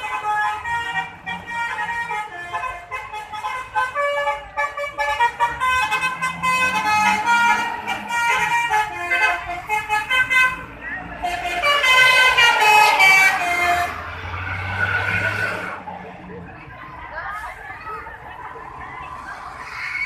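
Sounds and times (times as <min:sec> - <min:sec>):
multi-tone bus air horn melody: 0:00.0 - 0:14.2.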